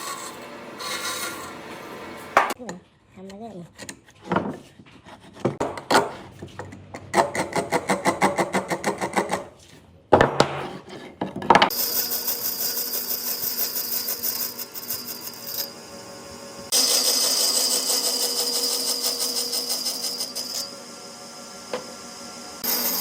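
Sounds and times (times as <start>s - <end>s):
power tool hissing: 16.7s - 23.0s.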